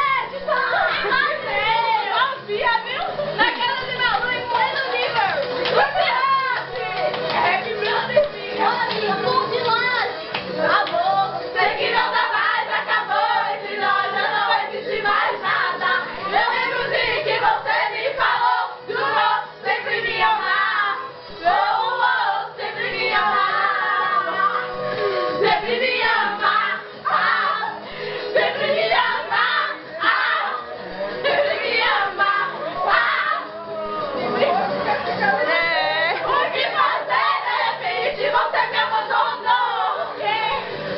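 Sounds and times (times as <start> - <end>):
group singing: 0.0 - 40.9.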